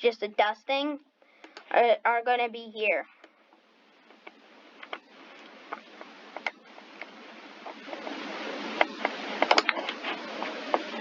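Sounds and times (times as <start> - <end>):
steady hiss: 0.0 - 11.0
sharp clicks and taps: 1.4 - 1.8, 3.2 - 8.1.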